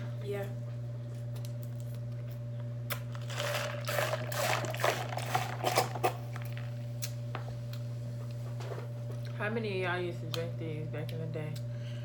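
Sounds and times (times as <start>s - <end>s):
low electrical hum: 0.0s - 12.0s
crunching and crinkling handling: 1.1s - 6.8s.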